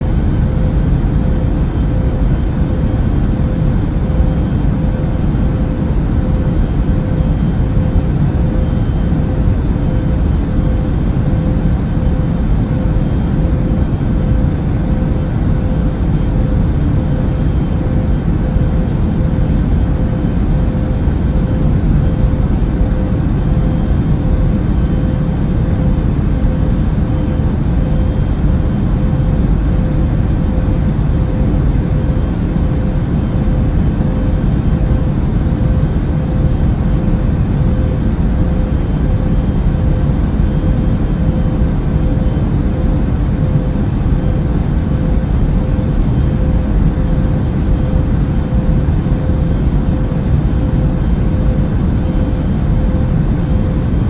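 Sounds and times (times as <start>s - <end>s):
aircraft cabin rumble: 0.0s - 54.0s
faint constant hum: 0.0s - 54.0s.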